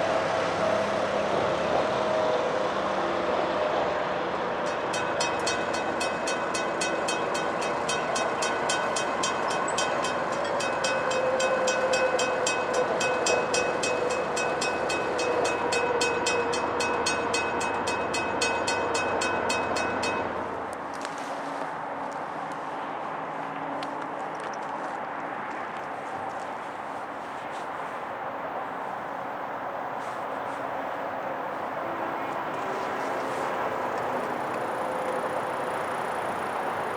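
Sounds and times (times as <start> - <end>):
freight train rumbling past: 0.0 - 36.9
bell dinging rapidly: 4.7 - 20.4.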